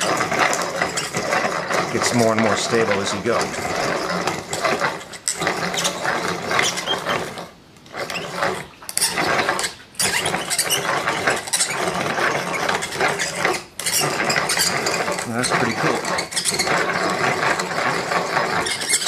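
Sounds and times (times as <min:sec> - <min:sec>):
blade cutter shaving wood: 0:00.0 - 0:19.0.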